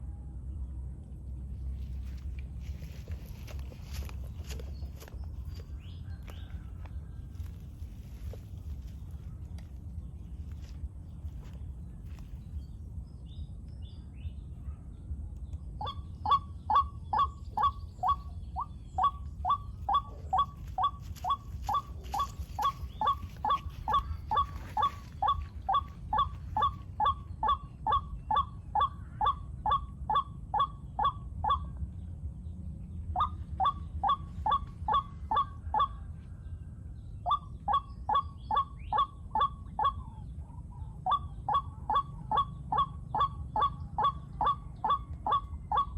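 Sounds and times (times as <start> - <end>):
waterhen calling kwak notes: 15.8 - 31.6.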